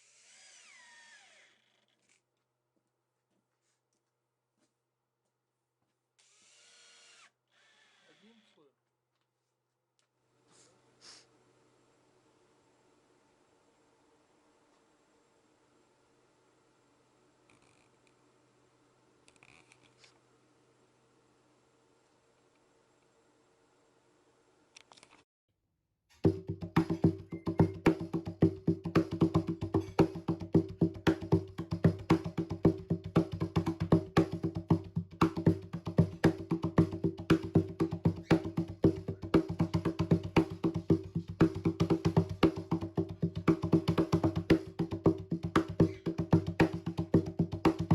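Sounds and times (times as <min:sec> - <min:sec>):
cajon played by hand: 0:26.2 - 0:47.9.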